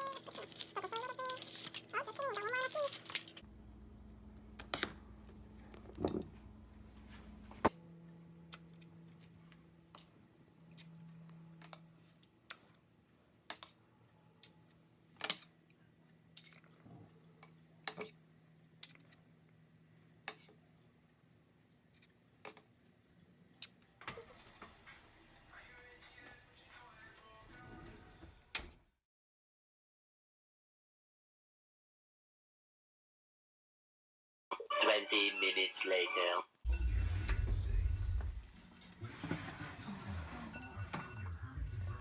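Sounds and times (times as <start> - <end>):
faint low hum: 35.2 - 42.0.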